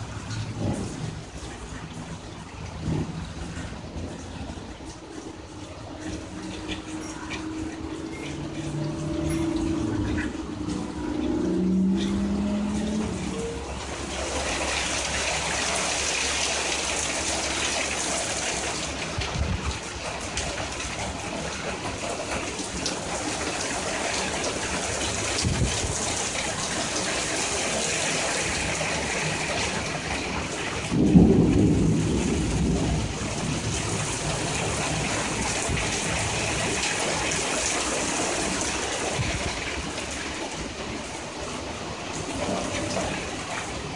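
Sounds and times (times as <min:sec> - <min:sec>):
heavy rain: 0:00.0 - 0:43.9
thunder rumble: 0:00.0 - 0:43.9.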